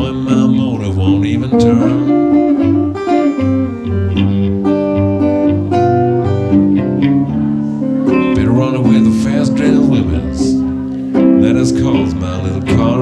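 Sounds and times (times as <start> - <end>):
person singing: 0.0 - 3.8, 7.2 - 13.0
acoustic blues guitar: 0.0 - 13.0.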